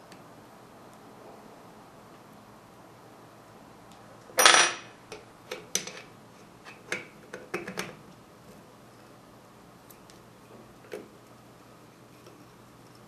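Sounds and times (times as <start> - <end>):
metal parts clattering on workbench: 4.4 - 4.9.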